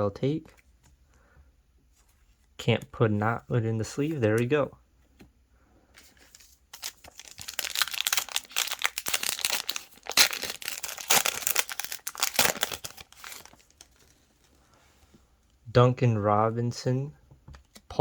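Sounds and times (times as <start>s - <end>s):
plastic wrapper crinkling and tearing: 6.1s - 14.5s.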